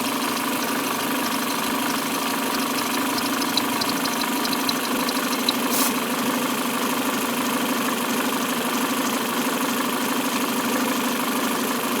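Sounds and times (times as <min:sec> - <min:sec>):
high chirp from engine belt: 0:00.0 - 0:06.3
car engine idling: 0:00.0 - 0:08.5.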